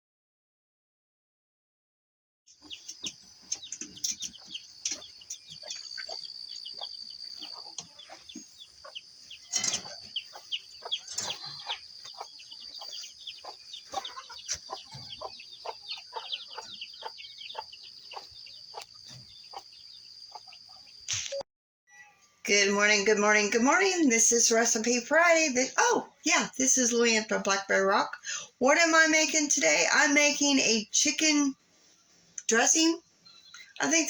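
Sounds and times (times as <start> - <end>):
small birds chirping: 2.5 - 21.2, 23.8 - 34.0
chickens clucking: 2.6 - 21.2.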